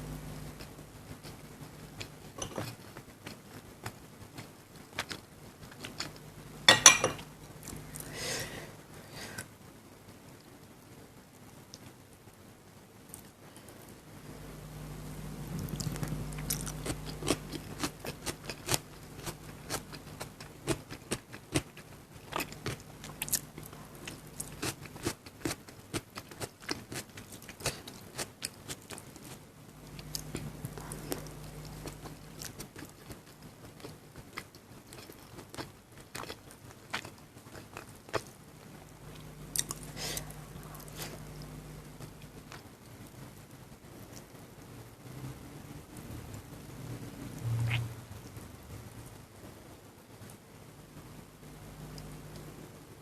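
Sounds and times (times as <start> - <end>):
chewing and biting food: 15.5 - 42.7.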